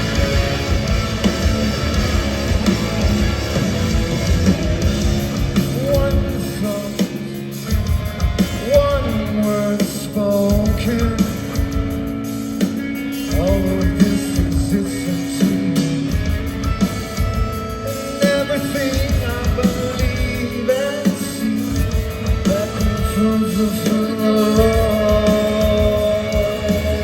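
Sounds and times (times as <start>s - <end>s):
bass guitar: 0.0s - 27.0s
distorted electric guitars: 0.0s - 27.0s
pounding drums: 0.0s - 27.0s
vocalist singing: 5.4s - 7.8s, 8.4s - 11.8s, 13.0s - 16.2s, 17.7s - 27.0s.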